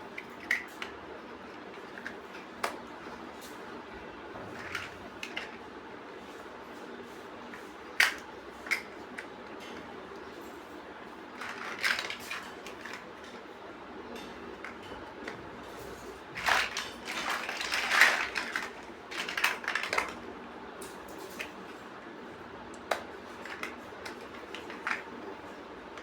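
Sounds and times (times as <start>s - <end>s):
plastic bricks clicking and rattling: 11.4s - 13.1s, 16.4s - 20.2s.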